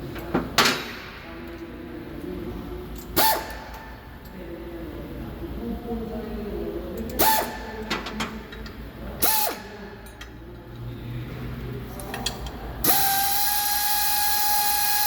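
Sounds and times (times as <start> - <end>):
air ratchet whining: 12.8 - 15.0.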